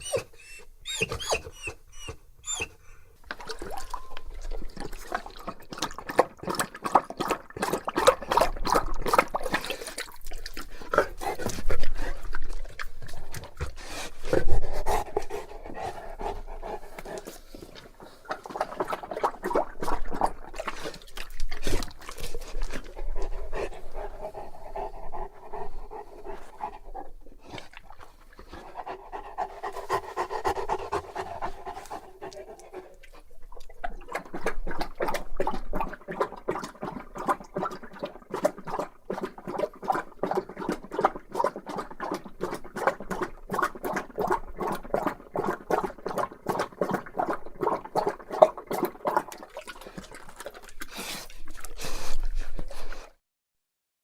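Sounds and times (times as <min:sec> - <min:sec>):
dog panting: 0:11.0 - 0:18.3, 0:22.7 - 0:27.6, 0:28.4 - 0:33.3.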